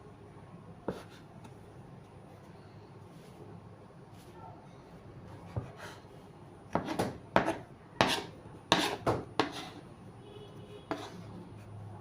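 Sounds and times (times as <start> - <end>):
knife chopping dough on a board: 0.8 - 1.6, 5.4 - 6.0, 6.7 - 9.9, 10.8 - 11.3.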